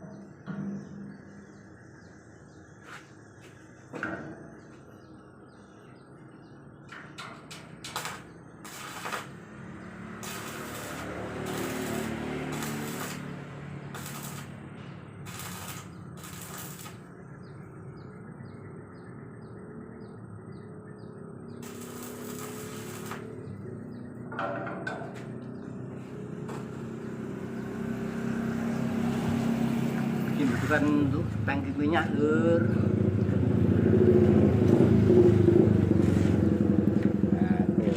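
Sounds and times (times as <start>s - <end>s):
knocks and clatters: 6.9s - 8.3s, 24.2s - 25.8s
engine running: 9.0s - 17.0s, 21.6s - 37.9s
bird chirping: 14.8s - 33.7s.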